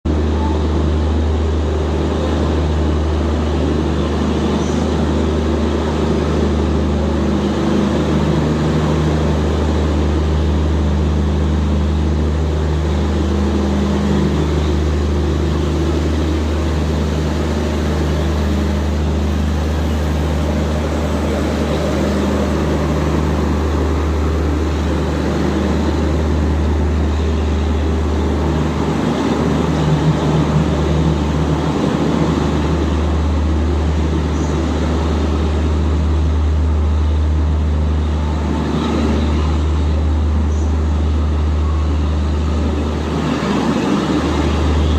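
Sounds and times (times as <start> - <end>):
diesel generator droning: 0.0 - 44.9.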